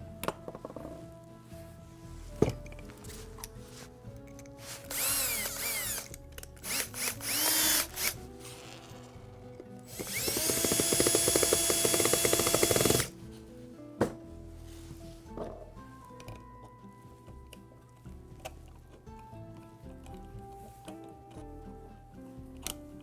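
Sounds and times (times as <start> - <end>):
power drill driving screws: 4.8 - 8.2, 9.9 - 13.1.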